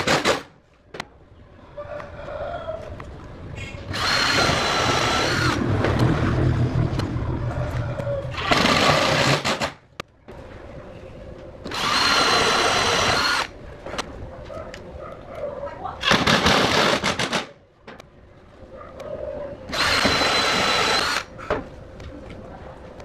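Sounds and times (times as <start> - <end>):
low rumbling noise: 1.2 - 16.8
angle grinder motor whining: 11.7 - 13.5, 19.7 - 21.3.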